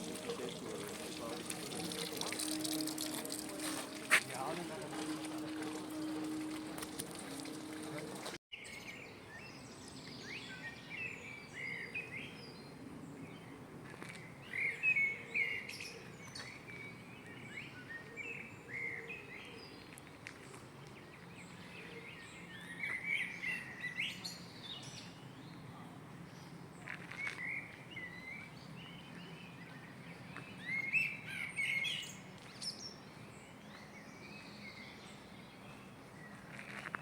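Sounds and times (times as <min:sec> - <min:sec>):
small songbirds chirping: 0:08.6 - 0:37.0.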